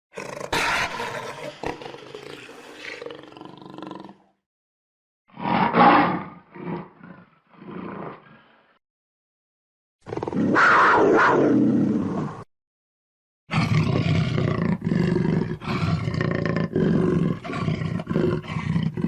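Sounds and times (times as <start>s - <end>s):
leopard roaring: 0.1s - 4.2s, 5.3s - 8.7s, 10.1s - 12.4s, 13.5s - 19.0s
leopard growling: 5.4s - 8.8s, 13.5s - 19.0s.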